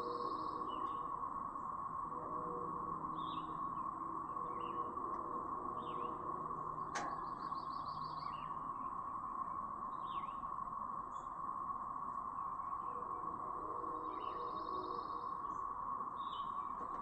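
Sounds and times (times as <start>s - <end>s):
bird chirps: 0.0s - 1.1s, 2.2s - 10.5s, 12.6s - 15.6s, 16.2s - 17.0s
cicadas chorus whine: 0.0s - 17.0s.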